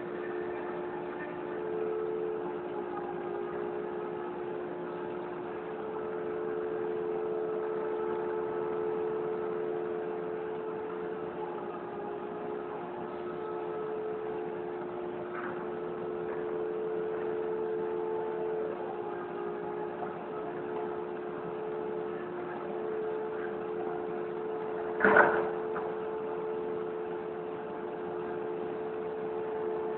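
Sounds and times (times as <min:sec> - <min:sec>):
machine motor whining: 0:00.0 - 0:29.9.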